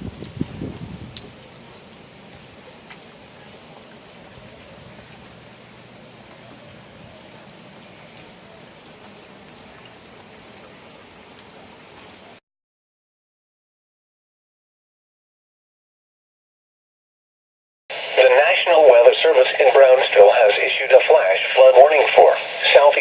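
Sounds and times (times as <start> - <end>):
steady rain falling: 0.0 - 12.4, 17.9 - 23.0.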